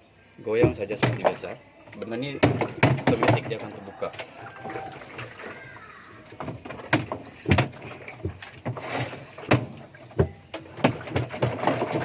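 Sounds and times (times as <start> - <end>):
washing machine drum clunking: 0.5 - 4.9.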